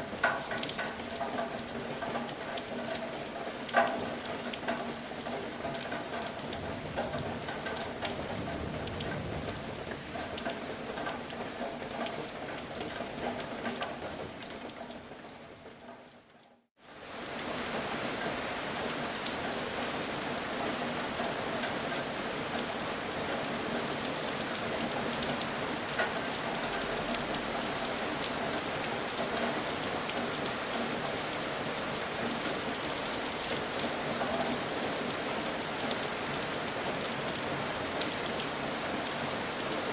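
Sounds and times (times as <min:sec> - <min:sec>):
rain falling: 0:00.0 - 0:39.9
bright rain hiss: 0:16.8 - 0:39.9.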